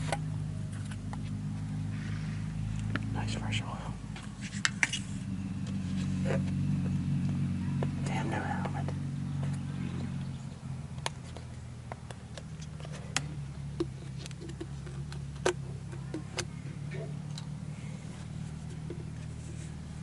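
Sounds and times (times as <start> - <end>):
low hum: 0.0 - 20.0
oil jug clicks and knocks: 11.0 - 17.5.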